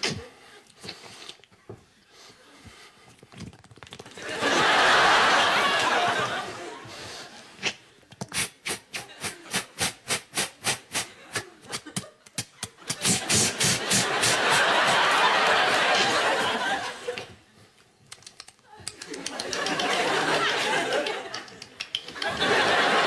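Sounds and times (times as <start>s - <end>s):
rapid clicking mouth noises: 3.1s - 4.2s, 7.6s - 15.0s, 17.2s - 20.2s, 20.9s - 22.4s
audience laughter: 4.1s - 7.4s, 11.0s - 17.3s, 19.0s - 23.0s.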